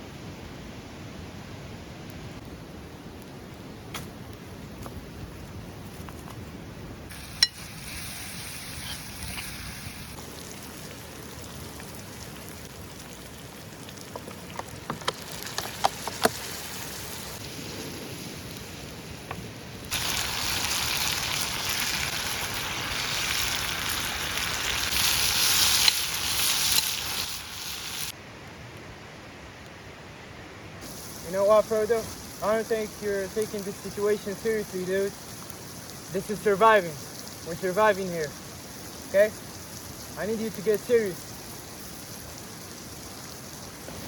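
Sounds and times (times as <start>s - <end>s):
food sizzling in a pan: 7.1s - 19.2s, 19.9s - 28.2s, 30.8s - 44.0s.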